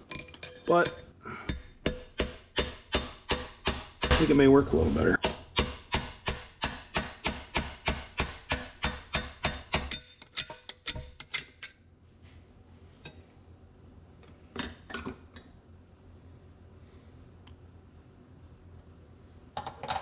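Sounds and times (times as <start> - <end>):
hammer striking metal: 0.8 - 4.5, 5.2 - 11.2.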